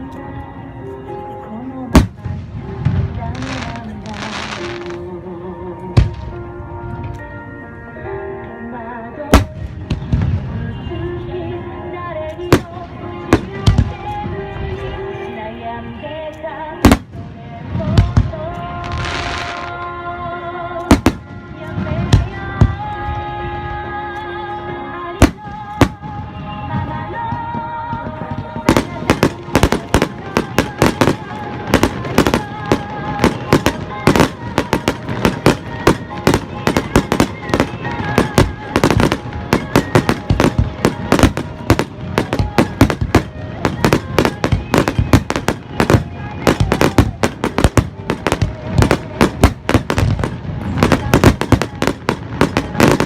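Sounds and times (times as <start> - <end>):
music with sustained notes: 0.0 - 53.0
fireworks bangs: 16.8 - 19.8, 25.2 - 53.0.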